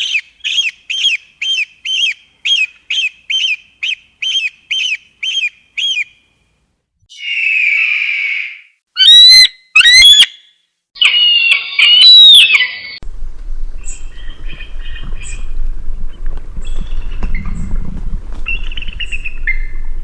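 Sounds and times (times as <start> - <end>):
eagle screeching: 7.1 - 10.4, 11.0 - 13.0.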